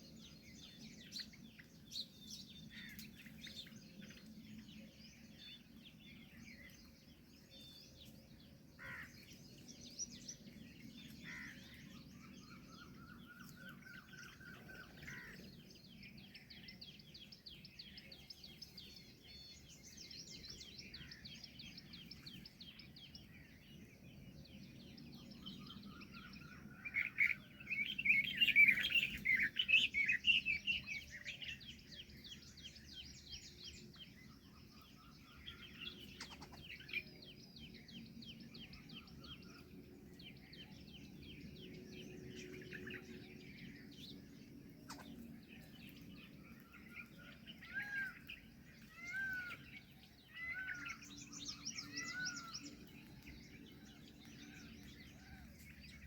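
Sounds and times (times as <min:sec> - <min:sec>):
birds chirping and twittering: 0:00.0 - 0:56.0
rapid chattering bird calls: 0:35.5 - 0:37.0, 0:44.8 - 0:45.3.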